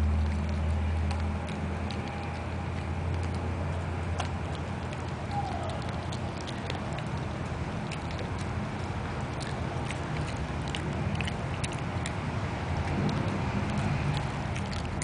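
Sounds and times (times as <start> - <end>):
dog crunching a carrot: 0.0 - 15.0
low hum: 0.0 - 15.0.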